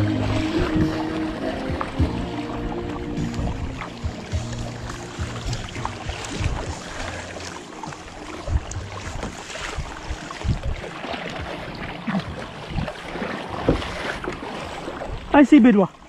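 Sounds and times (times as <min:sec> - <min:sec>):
wind on microphone: 0:00.0 - 0:15.4
water splashing around kayak: 0:00.0 - 0:16.0
low knocks against hull: 0:01.7 - 0:07.2, 0:07.9 - 0:14.4.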